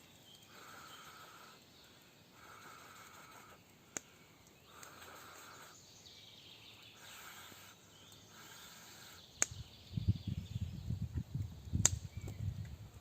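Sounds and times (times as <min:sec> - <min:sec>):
sharp click: 0:11.8 - 0:12.4.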